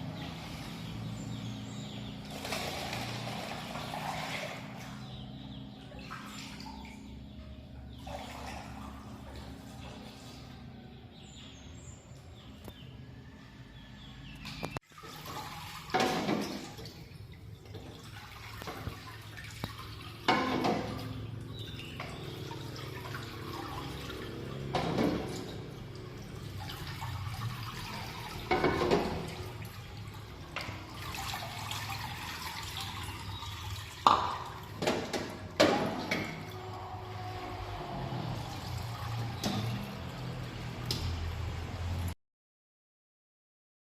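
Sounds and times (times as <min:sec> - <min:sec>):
water running and splashing: 0:14.8 - 0:42.1.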